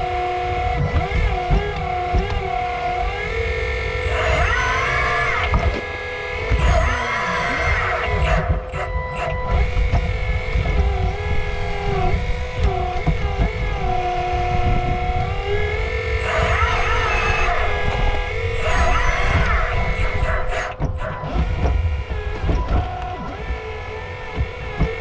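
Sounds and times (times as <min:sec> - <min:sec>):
hydraulic pump whining: 0:00.0 - 0:25.0
scattered knocks: 0:18.7 - 0:25.0.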